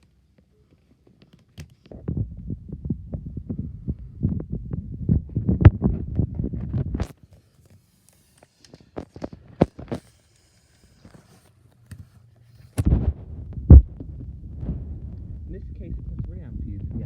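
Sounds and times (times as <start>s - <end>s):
rubbing and knocking handling noise: 0.8s - 17.0s.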